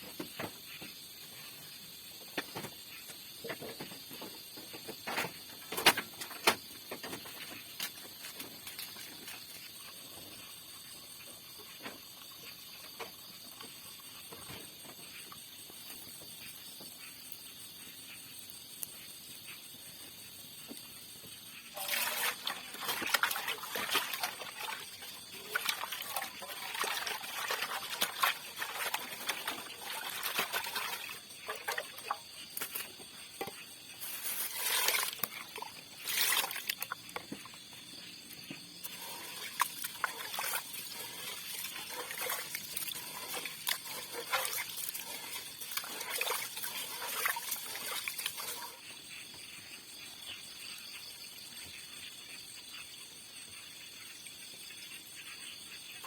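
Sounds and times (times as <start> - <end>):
water splashing and sloshing: 0.0 - 17.4, 20.0 - 52.7
insect chorus: 0.0 - 56.0.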